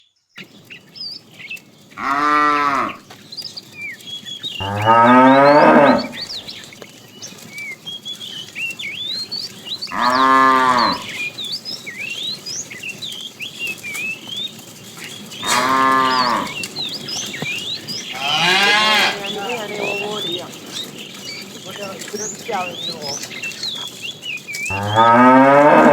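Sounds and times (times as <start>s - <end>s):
cows mooing: 2.0s - 3.1s, 4.6s - 6.4s, 9.8s - 11.4s, 15.2s - 24.0s, 24.7s - 25.9s.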